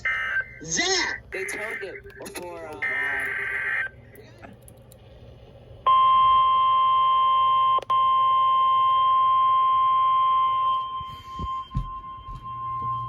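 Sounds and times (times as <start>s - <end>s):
weather radio alert beep: 1.4s - 2.1s, 2.8s - 3.9s.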